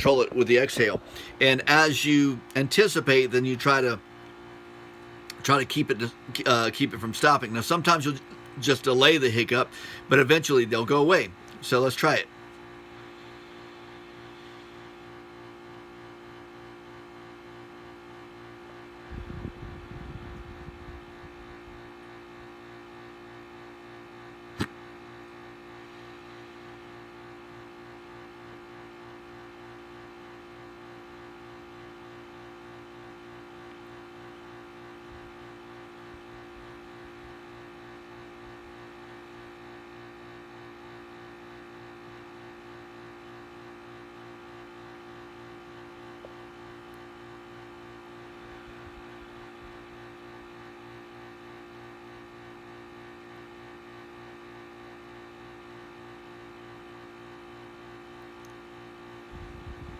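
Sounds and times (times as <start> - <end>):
steady mechanical hum: 0.0 - 59.9
sharp click: 24.6 - 24.8.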